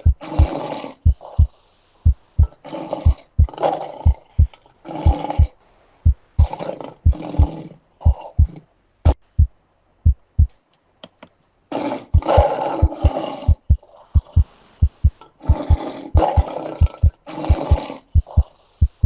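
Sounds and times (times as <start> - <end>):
person snoring: 0.0 - 1.5, 15.5 - 19.0
heartbeat thumping: 0.0 - 10.6, 12.2 - 19.0.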